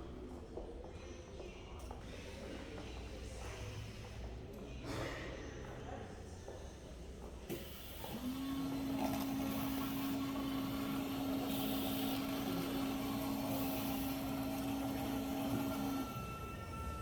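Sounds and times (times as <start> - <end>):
coffee machine motor hum: 7.6 - 17.0.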